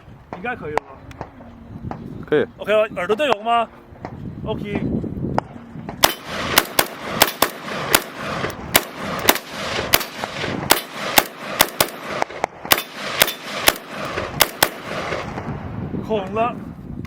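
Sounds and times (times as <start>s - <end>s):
rifle shots with echo: 5.8s - 15.6s.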